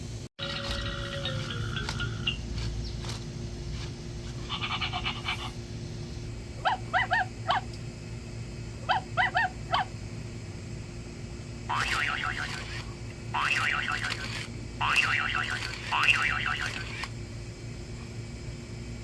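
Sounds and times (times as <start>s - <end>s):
electronic pulsing tone: 0.4s - 2.4s
electronic toy dog yapping barks: 6.6s - 7.7s, 8.8s - 9.9s, 11.7s - 17.1s.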